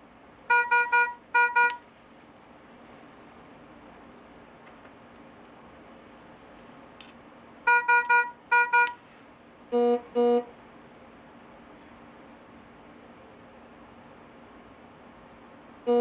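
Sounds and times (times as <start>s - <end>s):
patient monitor alarm beeps: 0.5s - 1.8s, 7.7s - 9.0s.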